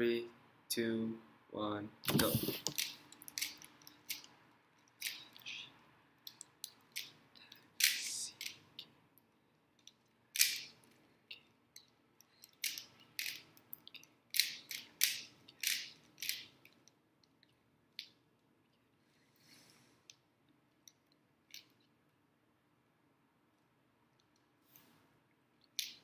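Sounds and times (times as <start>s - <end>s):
puzzle cube clicking and scraping: 2.1s - 4.2s, 7.8s - 8.6s, 14.4s - 16.5s.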